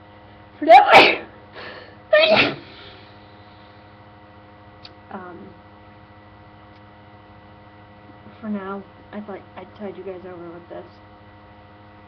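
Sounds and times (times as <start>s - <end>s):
steady electrical hum: 0.0s - 12.0s
woman sneezing: 0.6s - 3.0s.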